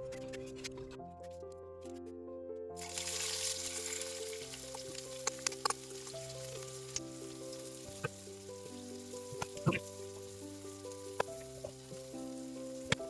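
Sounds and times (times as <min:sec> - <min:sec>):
background music: 0:00.0 - 0:13.0
food sizzling in hot oil: 0:02.8 - 0:13.0.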